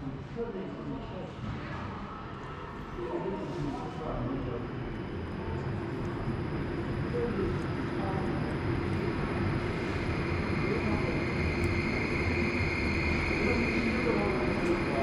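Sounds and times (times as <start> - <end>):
high whine: 4.4 - 15.0
train rumbling: 4.7 - 15.0.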